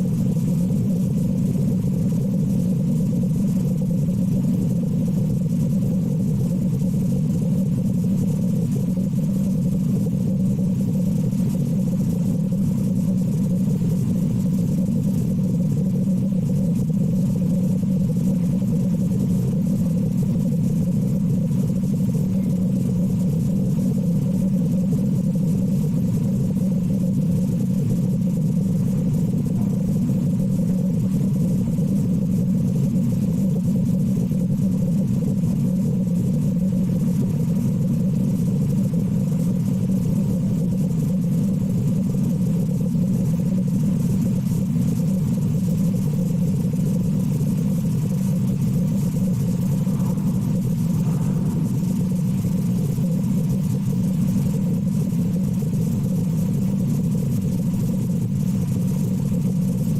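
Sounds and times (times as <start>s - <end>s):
low engine drone: 0.0s - 59.9s.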